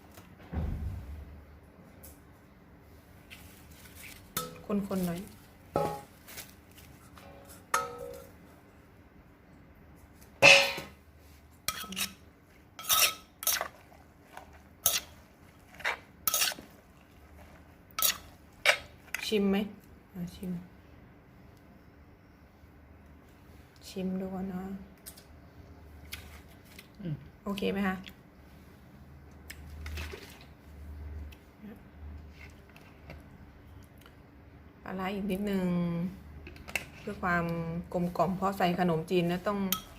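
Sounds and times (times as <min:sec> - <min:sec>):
light clicks and squishes: 0:11.3 - 0:20.5, 0:24.9 - 0:28.3, 0:29.2 - 0:34.4.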